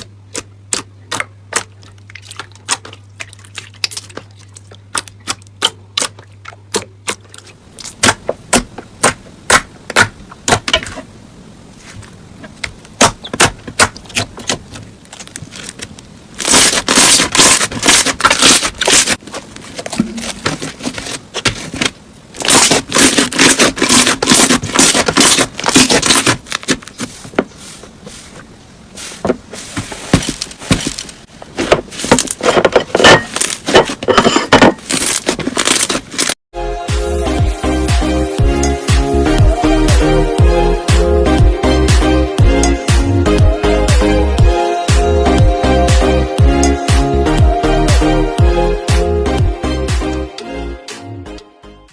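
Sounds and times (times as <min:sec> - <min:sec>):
slime popping and crackling: 0:12.6 - 0:19.2, 0:20.1 - 0:27.0.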